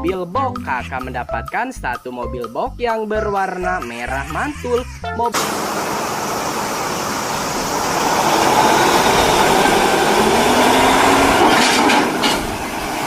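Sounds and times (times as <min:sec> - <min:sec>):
vehicle engine revving: 0:05.4 - 0:13.0.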